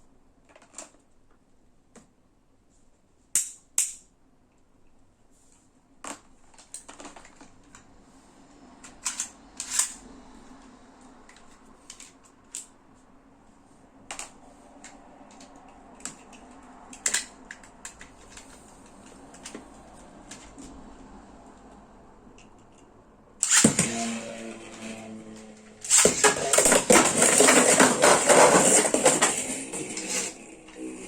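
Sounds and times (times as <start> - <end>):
plastic toy parts clicking: 6.0 - 7.9, 8.8 - 10.0, 11.3 - 12.7, 14.1 - 19.6.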